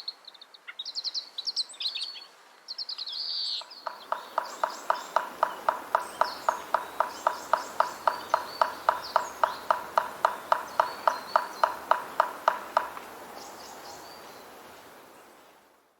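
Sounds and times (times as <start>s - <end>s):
birds twittering: 3.3s - 14.6s
hollow knocking: 3.9s - 13.0s.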